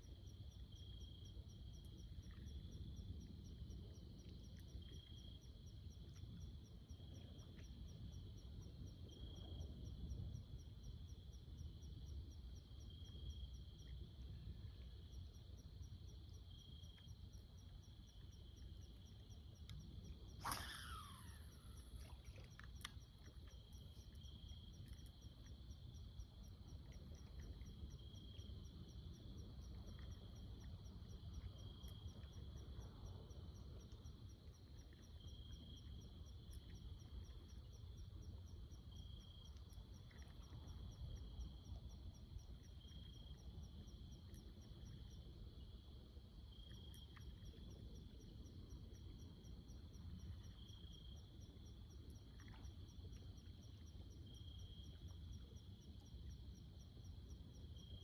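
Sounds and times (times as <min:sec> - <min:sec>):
insect chorus pulsing: 0:14.7 - 0:34.2
high insect trill: 0:17.8 - 0:26.4.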